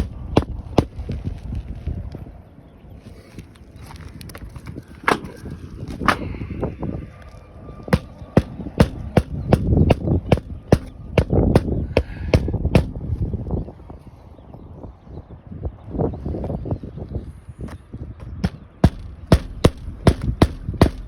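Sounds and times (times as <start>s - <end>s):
hammer striking roof shingles: 0.0s - 1.0s, 8.0s - 12.9s, 18.3s - 21.0s.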